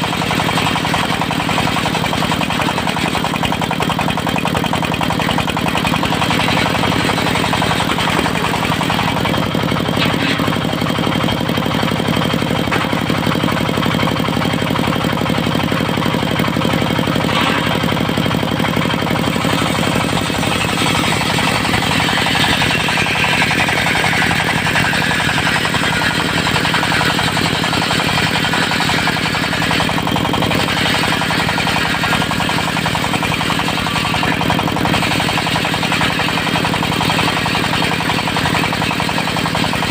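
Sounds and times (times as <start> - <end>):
diesel engine running: 0.0 - 39.9
circular saw blade whine: 19.0 - 38.8.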